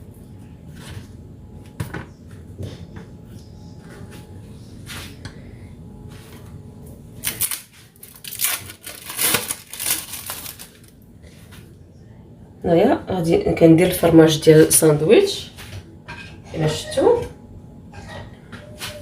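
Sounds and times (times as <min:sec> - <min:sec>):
plastic packaging crinkling and tearing: 0:07.2 - 0:11.0.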